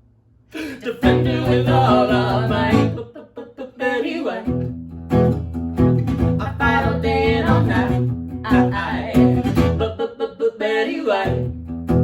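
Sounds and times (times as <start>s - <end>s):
song with bass line and melody: 4.7s - 9.8s.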